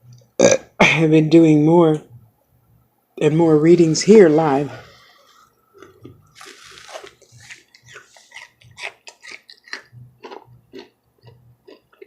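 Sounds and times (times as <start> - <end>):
mouth chewing and lip-smacking: 5.4 - 12.0.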